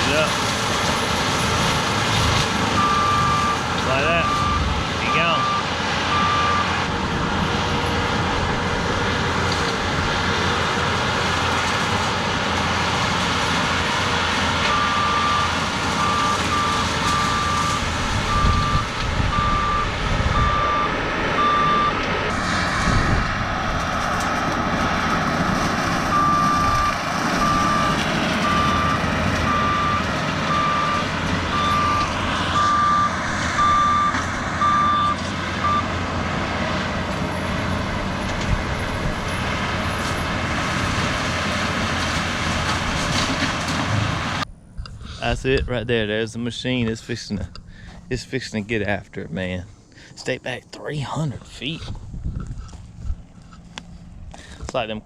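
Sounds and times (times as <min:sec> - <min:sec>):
diesel engine and mulching head: 0:00.0 - 0:55.0
backup alarm beeping: 0:02.8 - 0:06.7, 0:14.7 - 0:22.0, 0:26.1 - 0:35.9.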